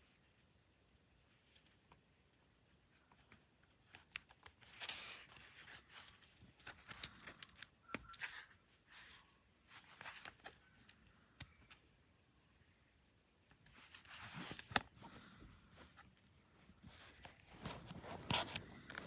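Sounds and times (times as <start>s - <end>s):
paper and packaging rustling: 13.6s - 19.0s.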